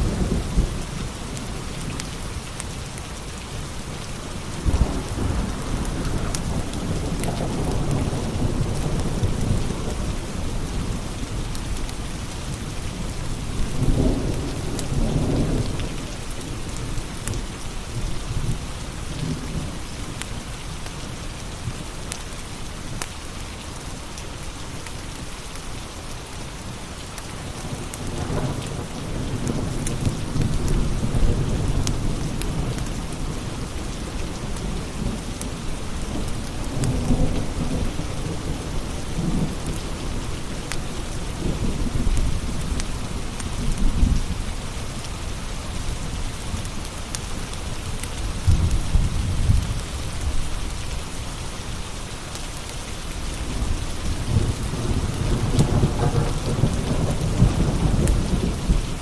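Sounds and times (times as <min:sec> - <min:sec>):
steady rain: 0:00.0 - 0:59.0
low rolling thunder: 0:04.3 - 0:11.8, 0:28.1 - 0:44.5, 0:48.3 - 0:50.4, 0:53.4 - 0:59.0.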